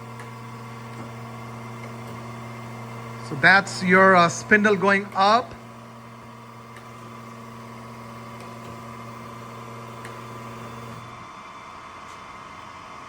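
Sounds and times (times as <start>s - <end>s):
grinder motor humming: 0.0s - 11.3s.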